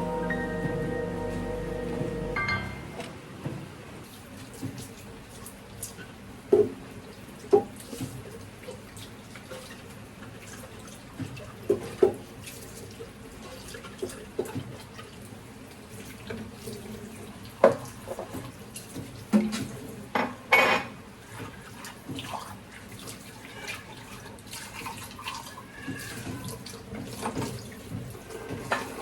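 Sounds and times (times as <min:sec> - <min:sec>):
tap water running into sink: 0:21.2 - 0:29.0.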